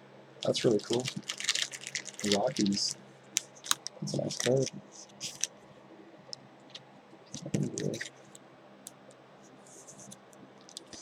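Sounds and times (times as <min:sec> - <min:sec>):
cards being handled and flipped: 0:00.4 - 0:05.5, 0:07.4 - 0:08.2.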